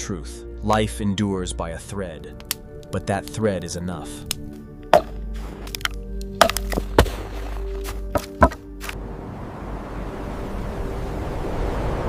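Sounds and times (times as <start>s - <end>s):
background music with held tones: 0.0s - 11.3s
sharp knocks: 4.9s - 5.2s, 8.1s - 8.7s.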